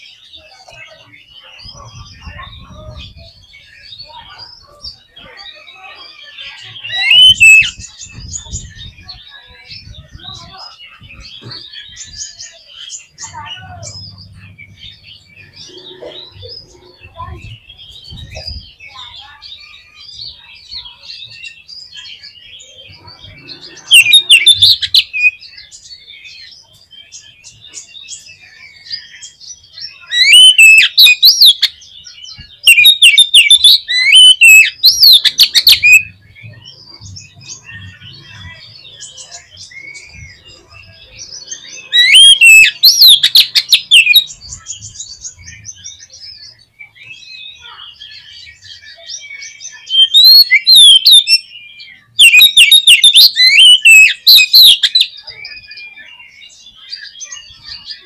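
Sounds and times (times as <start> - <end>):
quiet bird chirps: 0.0 - 58.0
bird singing rapid whistles: 6.8 - 9.1, 22.2 - 25.8, 28.3 - 58.0.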